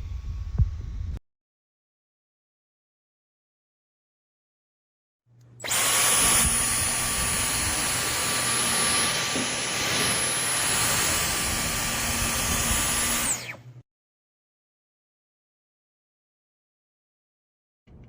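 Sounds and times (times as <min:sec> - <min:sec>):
vacuum cleaner motor whine: 0:05.6 - 0:13.8.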